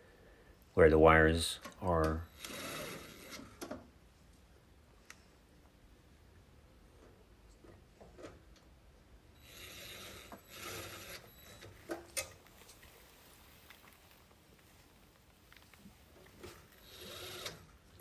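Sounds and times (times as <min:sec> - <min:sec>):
metal rasping scrapes: 0:02.3 - 0:03.6, 0:09.5 - 0:11.6, 0:16.4 - 0:18.0.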